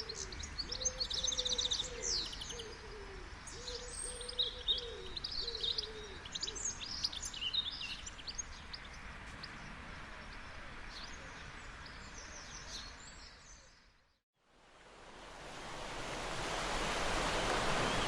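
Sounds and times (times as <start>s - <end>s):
distant surf hiss: 14.5s - 18.0s
birds chirping: 17.2s - 18.0s.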